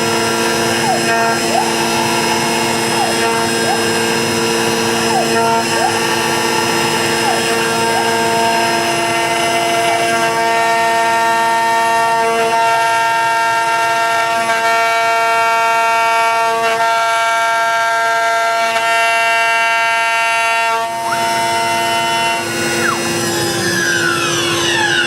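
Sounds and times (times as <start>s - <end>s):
router spindle whining: 0.0s - 12.2s, 20.8s - 25.0s.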